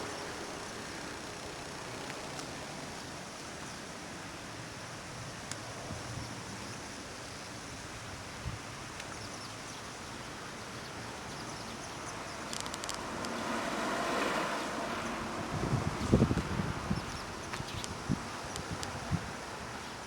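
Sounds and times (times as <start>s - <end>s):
road vehicle passing: 0.0s - 3.5s, 11.1s - 19.7s
outdoor background noise: 0.0s - 20.0s
low rumbling bumps: 14.9s - 19.3s.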